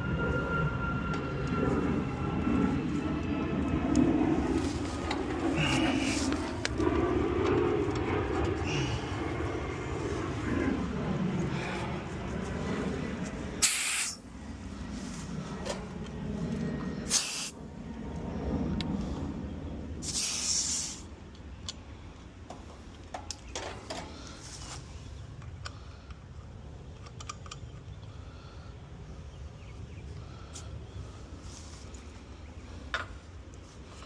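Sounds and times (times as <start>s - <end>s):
short hisses: 13.6s - 14.2s, 17.1s - 17.6s, 20.0s - 21.1s.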